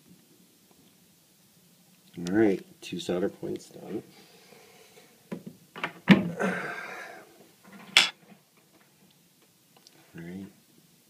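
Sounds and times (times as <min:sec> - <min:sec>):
scraping on workbench: 0:07.7 - 0:08.2.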